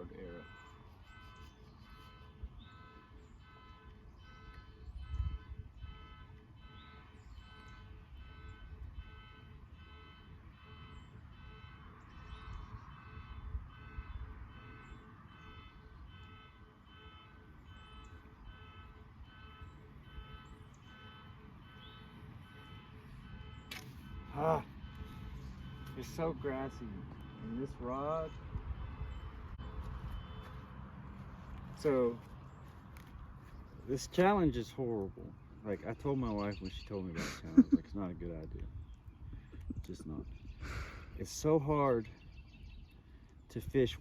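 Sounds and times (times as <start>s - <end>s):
low wind rumble on microphone: 0.0s - 25.8s, 27.0s - 31.6s, 37.4s - 41.2s, 42.1s - 44.0s
faint electronic beeping: 0.0s - 32.5s.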